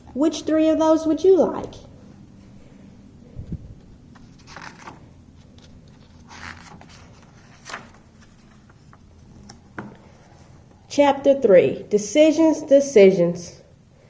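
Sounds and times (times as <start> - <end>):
faint rustling and scraping: 2.0 - 10.8.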